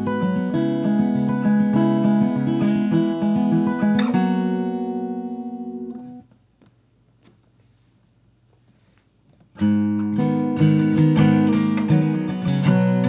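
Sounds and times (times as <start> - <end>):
acoustic guitar strumming: 0.0 - 6.3, 9.6 - 13.0.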